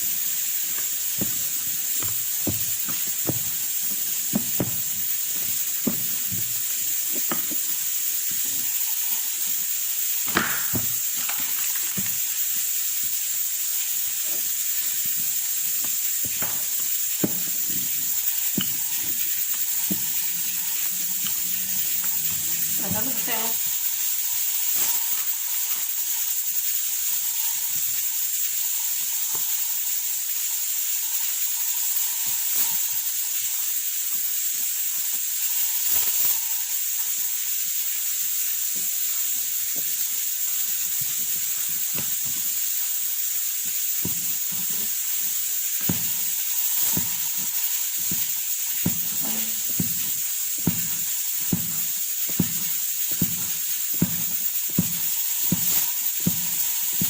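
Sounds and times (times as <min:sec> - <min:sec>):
food sizzling in a pan: 0:00.0 - 0:57.0
utensil knocking against pan: 0:45.8 - 0:57.0.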